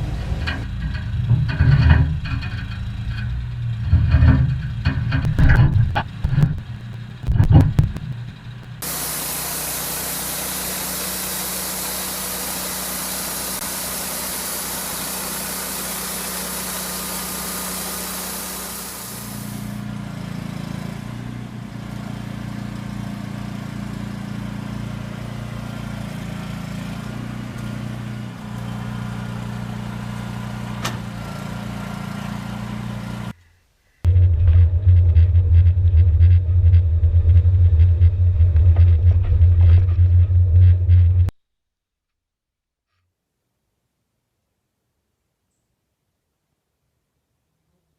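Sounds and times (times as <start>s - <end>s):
engine rumbling: 0.0s - 41.4s
high hiss: 8.8s - 19.8s.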